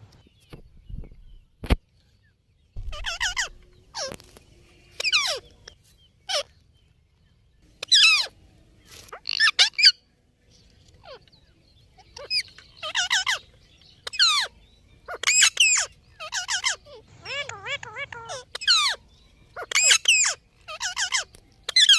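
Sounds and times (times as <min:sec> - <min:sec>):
parrot warbling calls: 0:02.8 - 0:04.2, 0:15.1 - 0:19.0, 0:19.6 - 0:21.9.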